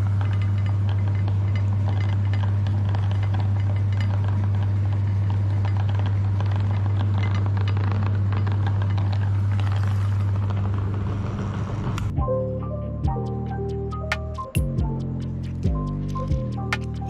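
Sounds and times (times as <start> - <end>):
grinder parts rattling and clinking: 0.0 - 11.2.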